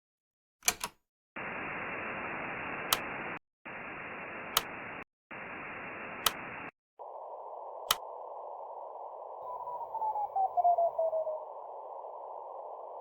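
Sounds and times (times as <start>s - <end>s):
sharp clicks: 0.6s - 1.0s, 4.5s - 5.0s, 6.1s - 6.7s, 7.8s - 8.1s
static hiss bursts: 1.4s - 10.0s.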